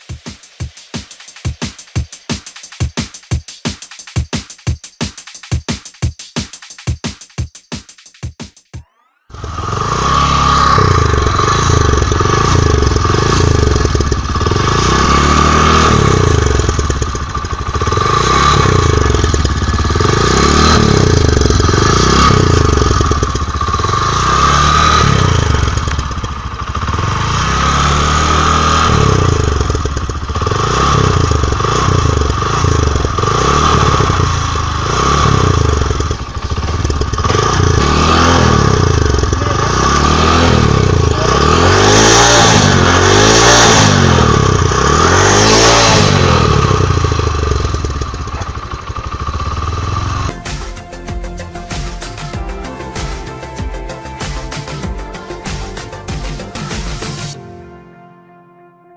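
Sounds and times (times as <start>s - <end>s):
high whine: 8.9s - 27.8s
motorbike engine revving: 9.3s - 50.5s.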